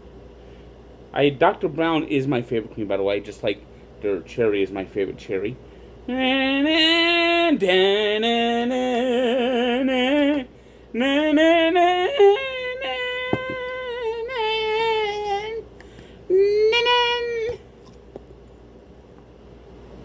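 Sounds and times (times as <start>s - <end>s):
person singing operatic notes: 6.1s - 15.7s, 16.3s - 17.6s.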